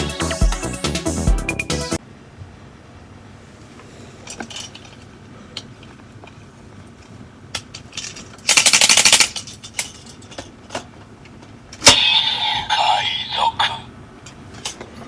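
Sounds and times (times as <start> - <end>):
plastic toy parts clicking: 7.6 - 10.8
rapid ratcheting clicks: 8.5 - 9.9.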